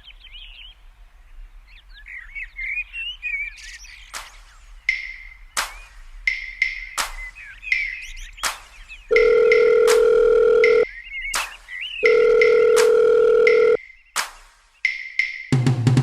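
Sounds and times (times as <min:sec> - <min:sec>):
telephone ringback tone: 0:09.1 - 0:10.8, 0:12.0 - 0:13.8.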